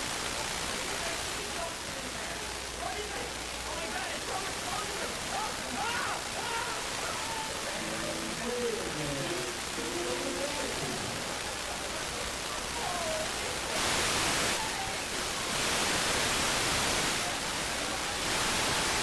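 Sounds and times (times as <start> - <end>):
television static hiss: 0.0 - 19.0
faint wavering voice-like tones: 7.5 - 13.7.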